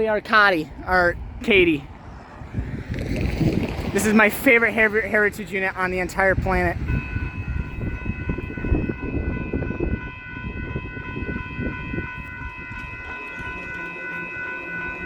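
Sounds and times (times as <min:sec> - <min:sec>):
freight train rumble: 0:00.0 - 0:15.0
steady high-pitched tone: 0:06.7 - 0:15.0.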